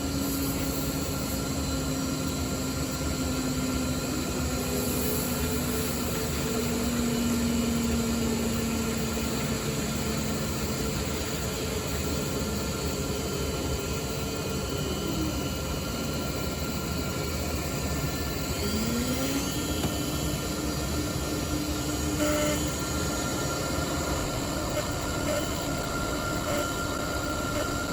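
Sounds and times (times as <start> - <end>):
cnc router spindle cutting: 0.0 - 27.9
machine tones: 0.1 - 27.9.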